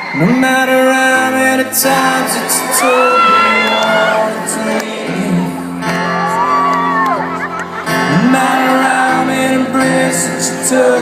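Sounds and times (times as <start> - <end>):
live band playing sustained chords: 0.0 - 11.0
audience cheering: 2.0 - 8.0.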